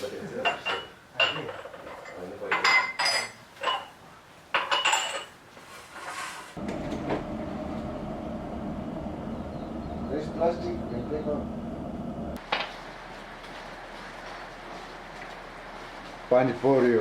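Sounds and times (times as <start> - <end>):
utensils and dishes clattering: 0.4 - 4.0, 4.6 - 5.4
low machine hum: 6.6 - 16.7.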